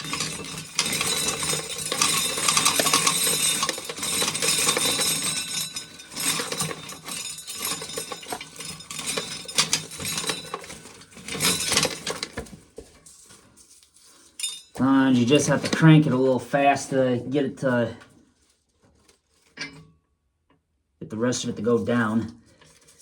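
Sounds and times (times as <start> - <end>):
dry kernels clattering in a sheller: 0.0 - 17.9.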